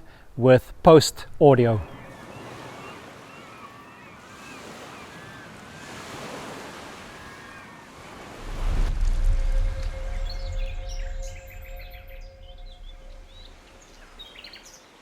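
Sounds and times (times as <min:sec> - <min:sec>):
wind: 0:00.0 - 0:15.0
waves: 0:01.7 - 0:15.0
deep low rumble: 0:08.4 - 0:14.3.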